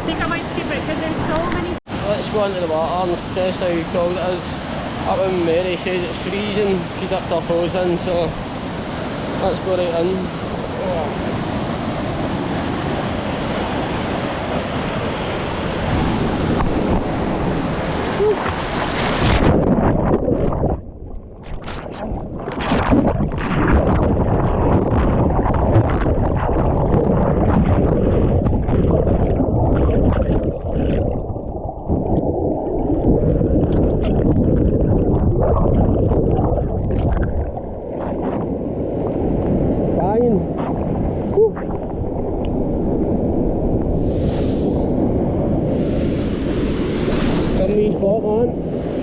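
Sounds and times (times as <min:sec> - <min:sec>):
underwater gurgling and knocks: 0:16.0 - 0:17.8, 0:18.4 - 0:44.0.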